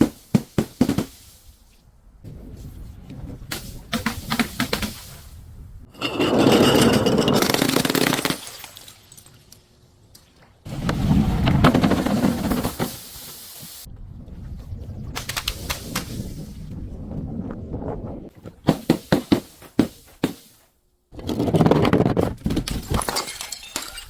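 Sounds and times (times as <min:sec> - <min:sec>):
objects crunching and breaking: 0:06.7 - 0:09.3
sharp cracks and snaps: 0:15.2 - 0:16.1.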